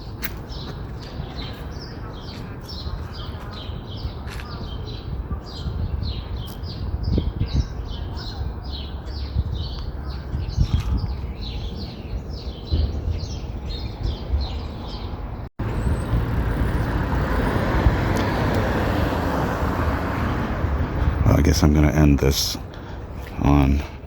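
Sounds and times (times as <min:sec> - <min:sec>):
street traffic rumble: 0:00.0 - 0:24.0
bird chirping: 0:00.4 - 0:17.1.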